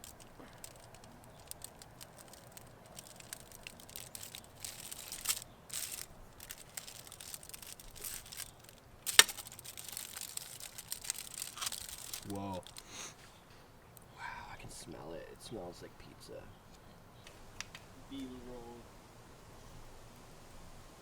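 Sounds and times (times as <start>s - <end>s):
crust cracking: 0.0s - 12.9s
crispy crust crackling: 0.0s - 13.2s.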